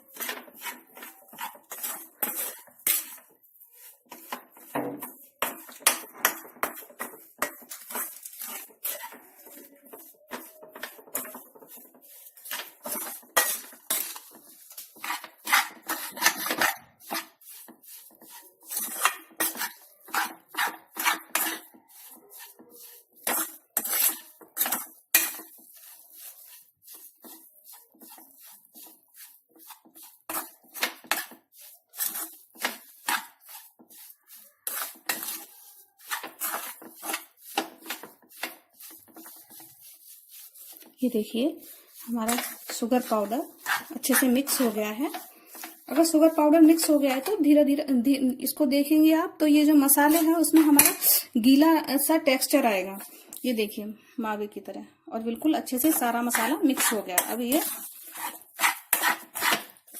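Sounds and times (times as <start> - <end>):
spoon scraping a metal pan: 0.0 - 47.6, 49.6 - 53.4, 55.6 - 59.9.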